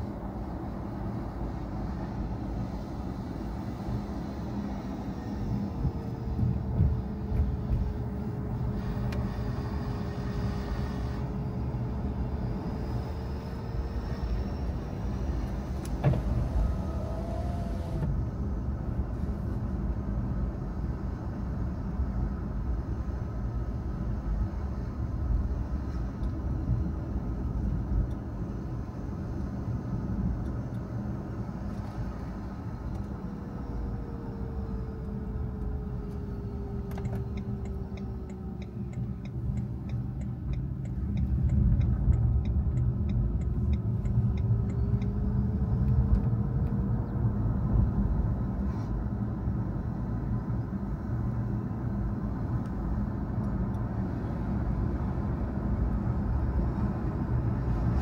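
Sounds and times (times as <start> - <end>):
car engine and tyre rumble: 0.0 - 58.0
regular ticking: 37.0 - 45.2.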